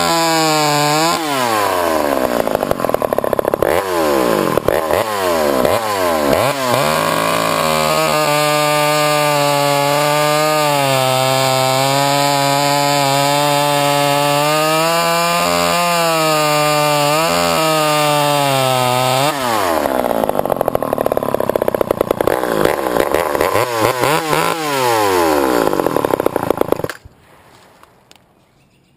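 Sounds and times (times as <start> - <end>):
chainsaw revving: 0.0 - 27.0.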